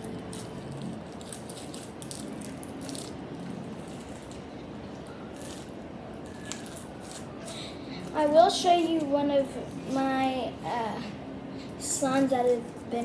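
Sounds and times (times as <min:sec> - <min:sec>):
slime being squished: 0:00.0 - 0:07.6.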